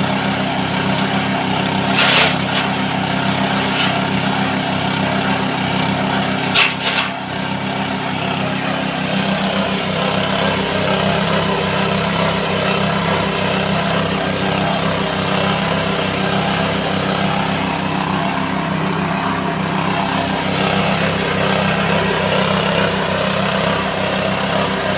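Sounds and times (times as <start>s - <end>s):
chopper machine engine running: 0.0s - 24.9s.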